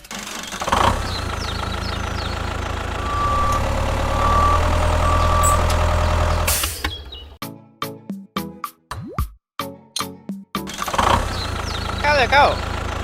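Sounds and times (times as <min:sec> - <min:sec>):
heavy vehicle engine running: 0:00.0 - 0:07.4, 0:10.8 - 0:13.0
reversing alarm beeping: 0:03.0 - 0:07.4.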